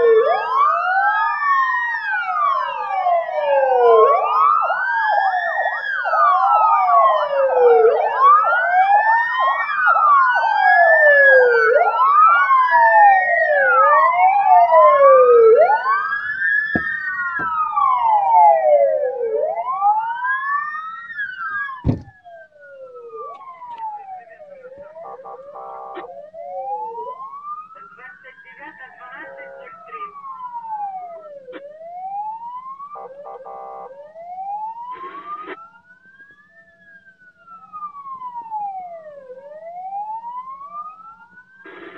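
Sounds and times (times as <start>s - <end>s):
ambulance sirens wailing: 0.0s - 41.9s
sharp knock: 16.8s - 17.5s, 21.8s - 22.1s.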